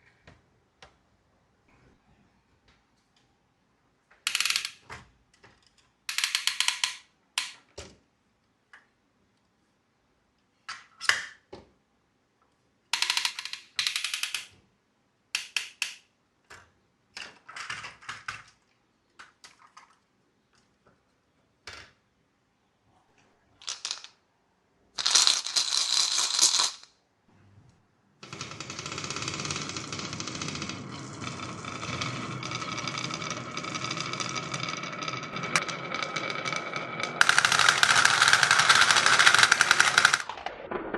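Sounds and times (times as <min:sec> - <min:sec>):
marbles rolling down wooden run: 0:04.3 - 0:04.8, 0:06.1 - 0:07.5, 0:23.6 - 0:24.1, 0:25.0 - 0:26.9, 0:28.2 - 0:40.9.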